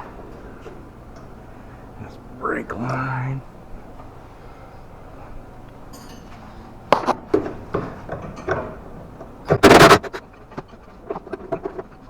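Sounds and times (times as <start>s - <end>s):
metal tool clanks and taps: 5.9s - 6.4s
loud burst of noise: 9.5s - 10.2s.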